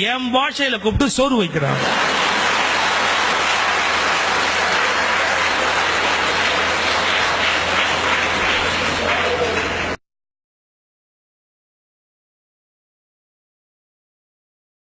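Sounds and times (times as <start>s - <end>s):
audience applauding: 1.6s - 10.0s.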